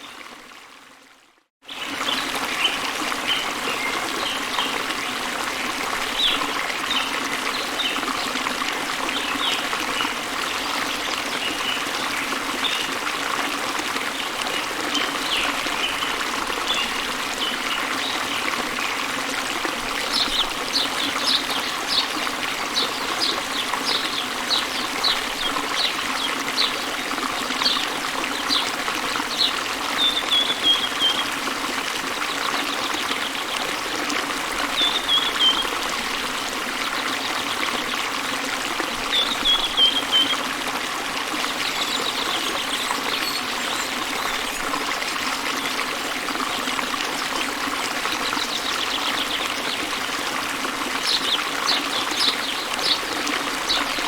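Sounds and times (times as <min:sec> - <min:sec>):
waterfall rushing: 0:14.1 - 0:32.4, 0:47.1 - 0:54.0
songbirds chirping: 0:19.9 - 0:31.4.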